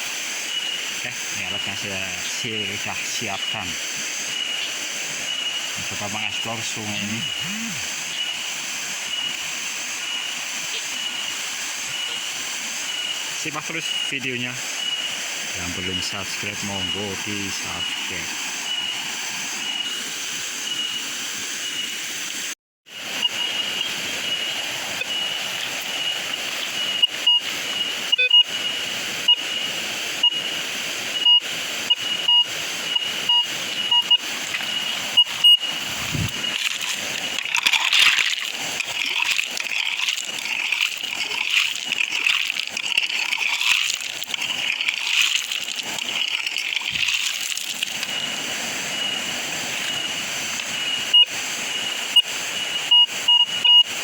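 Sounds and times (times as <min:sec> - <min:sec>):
stream running water: 0:00.0 - 0:54.0
metal detector high tone: 0:00.4 - 0:22.0, 0:23.1 - 0:30.5, 0:31.1 - 0:53.9
metal detector short beeps: 0:05.4 - 0:08.4, 0:23.2 - 0:28.5, 0:31.2 - 0:38.9, 0:48.0 - 0:53.9.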